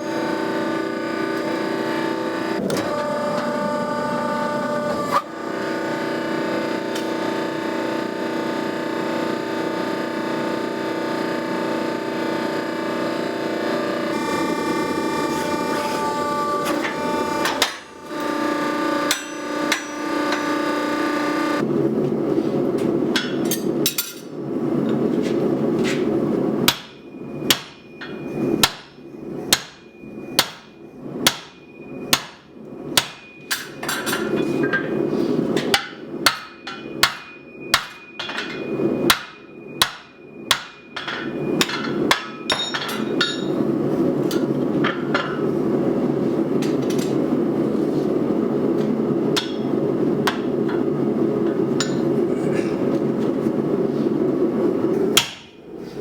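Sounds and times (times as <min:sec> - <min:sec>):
hammer striking steel on anvil: 0:19.0 - 0:20.5, 0:23.1 - 0:24.3, 0:26.7 - 0:34.9, 0:35.6 - 0:43.6, 0:49.4 - 0:49.7, 0:51.8 - 0:52.1, 0:55.2 - 0:55.6
high anvil ring: 0:19.1 - 0:20.2, 0:40.7 - 0:43.6, 0:51.8 - 0:52.1.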